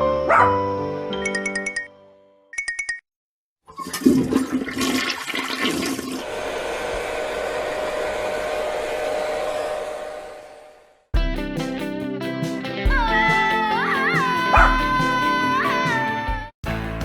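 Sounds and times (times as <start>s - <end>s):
electronic toilet flush effect: 3.7s - 10.9s.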